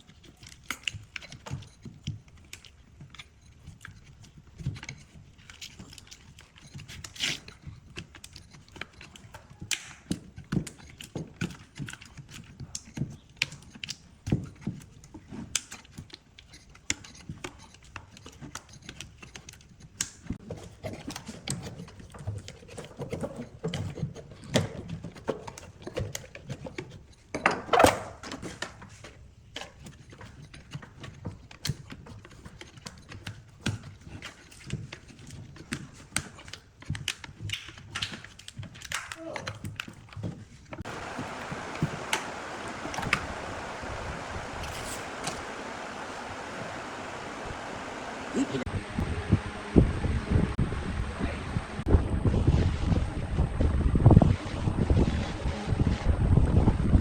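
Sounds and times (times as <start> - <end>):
objects tapping and knocking: 0.0 - 43.8.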